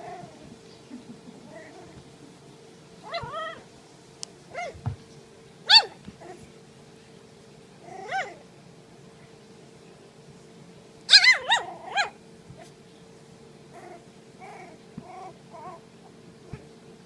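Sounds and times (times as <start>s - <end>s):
puppies whimpering: 3.0s - 3.7s, 7.8s - 8.4s, 11.1s - 12.2s
puppies yelping: 3.0s - 3.7s, 4.5s - 4.8s, 5.6s - 6.5s, 7.8s - 8.4s, 11.1s - 12.7s, 13.7s - 16.6s.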